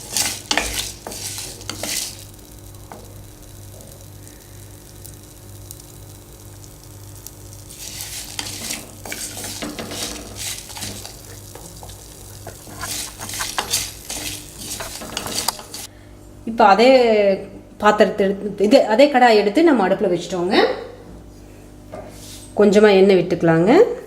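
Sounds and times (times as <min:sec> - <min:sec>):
spoon scraping a pan: 0:00.0 - 0:03.1, 0:07.7 - 0:15.9.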